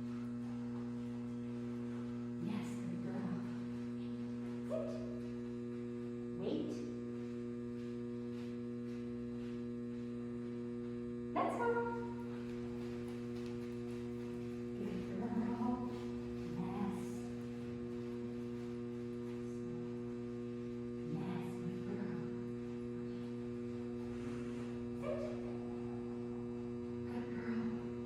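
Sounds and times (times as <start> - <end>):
electrical mains hum: 0.0 - 28.0.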